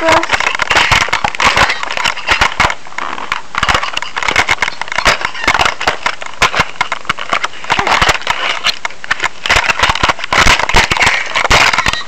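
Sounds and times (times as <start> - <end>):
packaging crinkling: 0.0 - 12.0.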